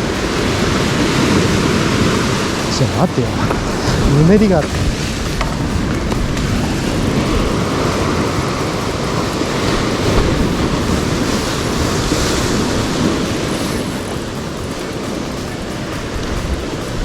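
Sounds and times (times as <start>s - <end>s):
sea waves washing on shore: 0.0s - 17.0s
wind buffeting microphone: 0.0s - 17.0s.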